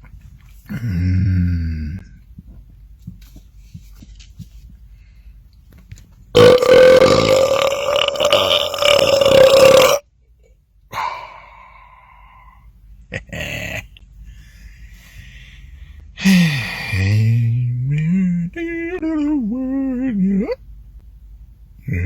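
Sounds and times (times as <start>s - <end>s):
deep growling voice: 0.7s - 2.1s
man belching: 0.7s - 2.1s, 6.4s - 10.0s, 13.1s - 14.0s.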